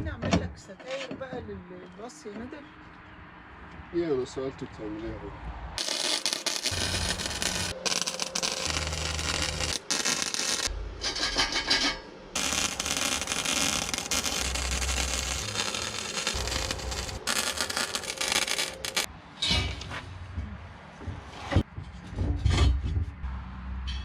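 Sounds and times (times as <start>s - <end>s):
arc welding: 5.8s - 10.7s, 12.4s - 19.1s.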